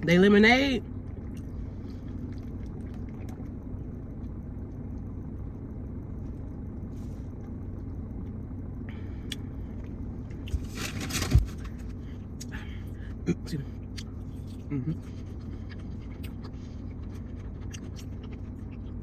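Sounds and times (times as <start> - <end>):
steady low rumble: 0.0 - 19.0
chewing clicks: 13.9 - 19.0.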